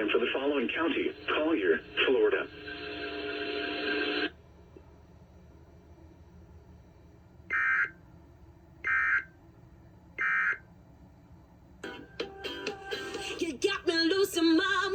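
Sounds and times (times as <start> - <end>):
broadcast audio: 0.0 - 4.3.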